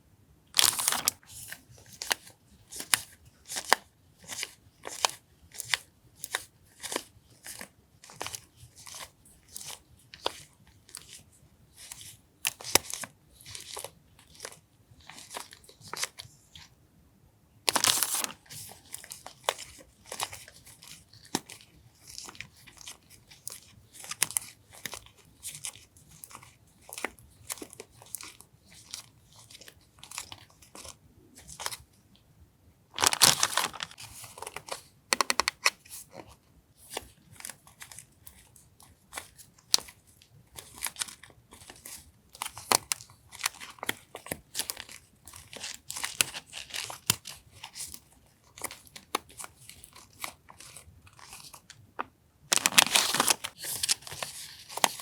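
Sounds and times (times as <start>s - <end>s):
packaging rustling and crinkling: 0.6s - 5.1s, 17.7s - 22.9s, 32.9s - 36.2s, 40.6s - 55.0s.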